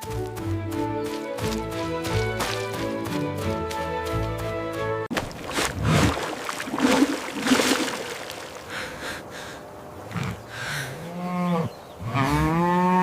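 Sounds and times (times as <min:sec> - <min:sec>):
cow mooing: 0:11.0 - 0:13.0.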